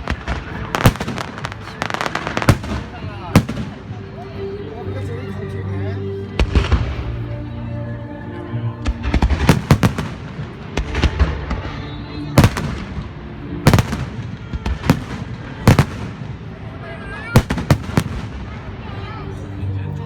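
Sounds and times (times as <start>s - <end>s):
fireworks bangs: 0.0s - 4.1s, 8.8s - 16.7s, 17.4s - 18.7s.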